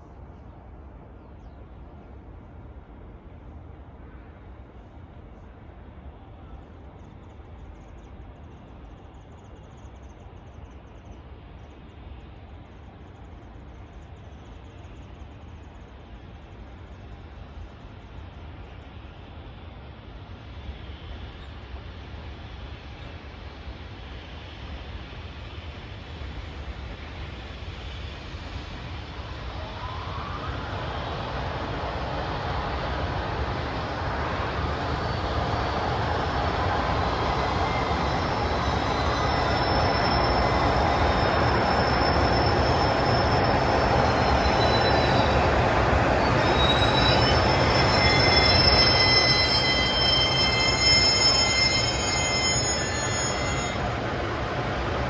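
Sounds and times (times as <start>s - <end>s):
electric freight train rumbling: 23.0s - 55.0s
high wheel squeal: 29.4s - 55.0s.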